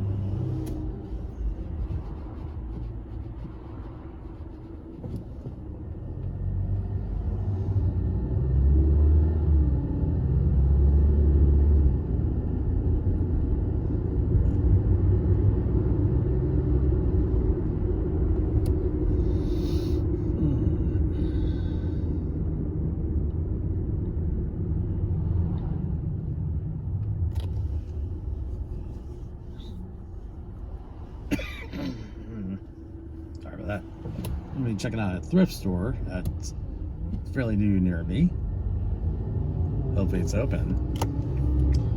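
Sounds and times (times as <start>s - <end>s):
car driving rumble from cabin: 0.0s - 41.9s.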